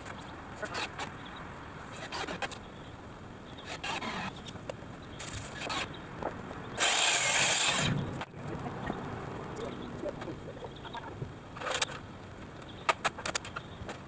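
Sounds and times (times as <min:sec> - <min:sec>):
power saw cutting wood: 0:03.7 - 0:04.3, 0:06.8 - 0:08.1
short noisy bursts: 0:06.8 - 0:08.3.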